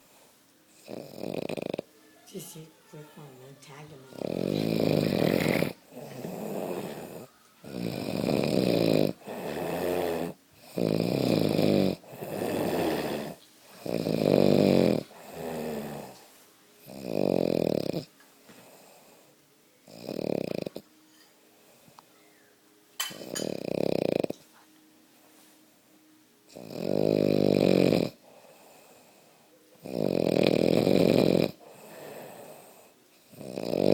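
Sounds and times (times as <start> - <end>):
person snoring loudly: 0.8 - 1.9, 4.1 - 16.2, 16.8 - 18.1, 19.9 - 20.8, 23.2 - 24.4, 26.5 - 28.4, 29.8 - 33.9.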